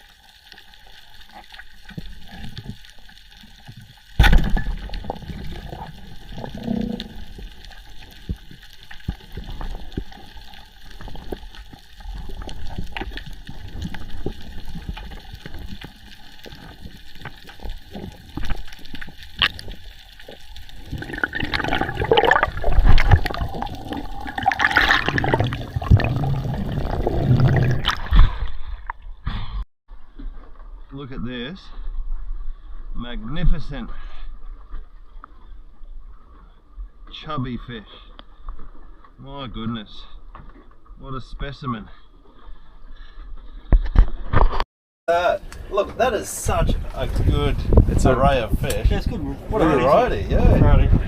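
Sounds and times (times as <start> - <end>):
sea water sloshing and gurgling: 0.0 - 29.2.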